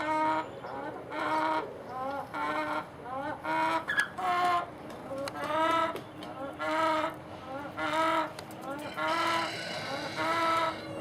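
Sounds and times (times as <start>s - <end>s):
hen calling: 6.6s - 11.0s.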